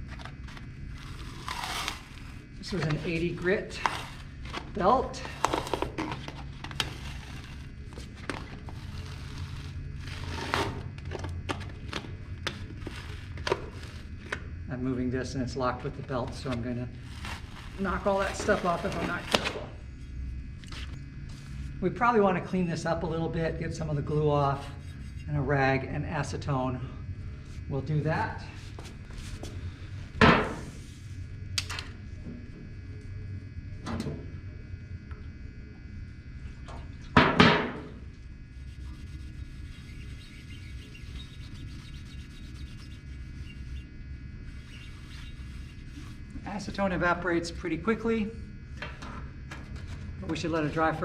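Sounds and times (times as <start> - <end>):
low room hum: 0.0 - 51.0
sanding disc rasping scrape: 24.5 - 25.3, 38.6 - 43.9, 44.5 - 46.2.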